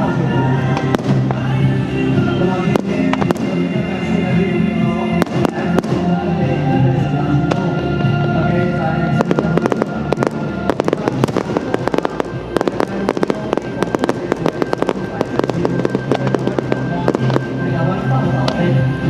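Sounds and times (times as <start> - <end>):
music with bass line: 0.0 - 19.0
fireworks cracking and popping: 0.8 - 1.6, 2.7 - 3.7, 5.2 - 6.2, 9.2 - 17.6.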